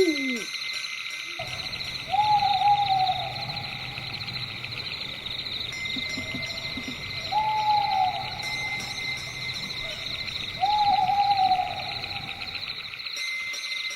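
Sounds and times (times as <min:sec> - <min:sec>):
crickets chirping: 0:00.0 - 0:13.3
owl hooting: 0:01.4 - 0:13.0.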